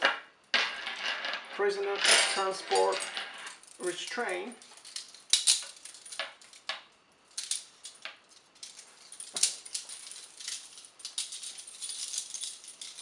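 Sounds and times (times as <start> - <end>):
metal chain clinking: 0.6 - 13.0.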